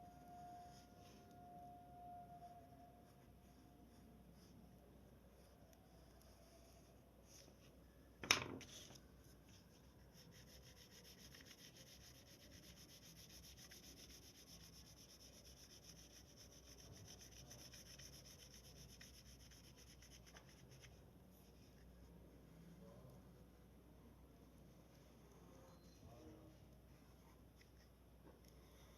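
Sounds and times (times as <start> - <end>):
drawing tool scratching paper: 8.6 - 21.0.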